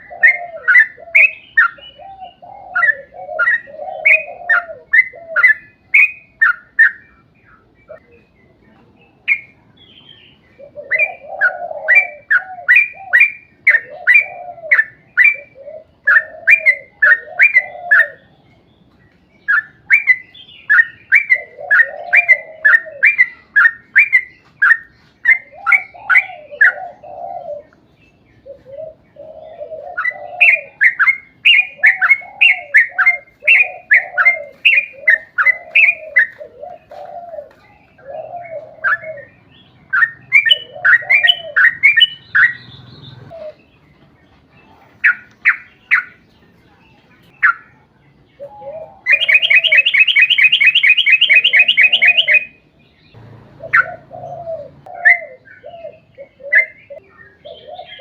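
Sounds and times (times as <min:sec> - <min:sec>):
lower bird warbling: 0:00.0 - 0:08.4, 0:09.1 - 0:18.5, 0:19.4 - 0:43.8, 0:47.2 - 0:58.0
bird singing repeated chirps: 0:39.0 - 0:43.6, 0:49.1 - 0:54.1.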